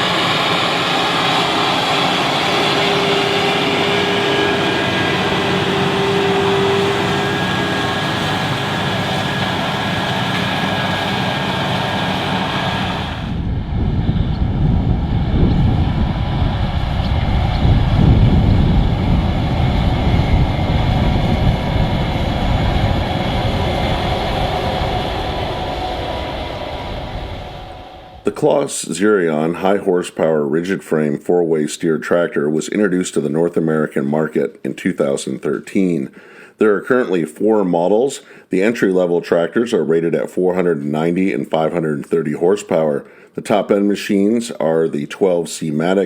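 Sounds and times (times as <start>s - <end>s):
rough tractor engine rumble: 0.0s - 13.3s
tractor diesel engine droning: 0.0s - 28.6s
high whine: 0.0s - 29.9s.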